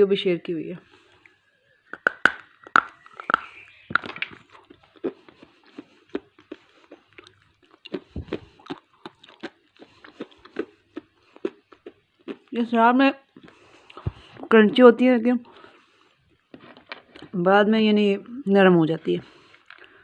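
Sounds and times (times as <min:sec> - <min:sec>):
clay crunching being chewed: 0:00.9 - 0:12.6, 0:13.3 - 0:14.3, 0:19.3 - 0:20.0.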